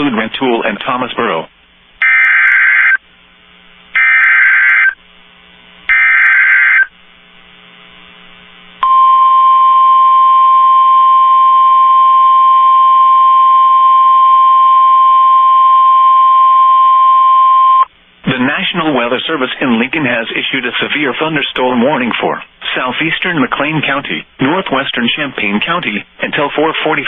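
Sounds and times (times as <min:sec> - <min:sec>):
steady alarm tone: 0:04.0 - 0:05.0, 0:05.9 - 0:06.9.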